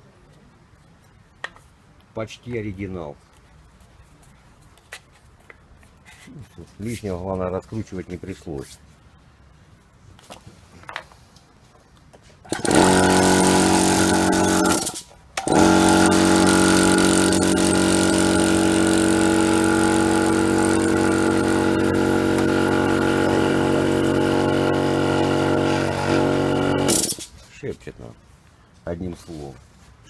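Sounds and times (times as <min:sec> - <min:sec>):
air compressor motor humming: 0:12.5 - 0:27.3.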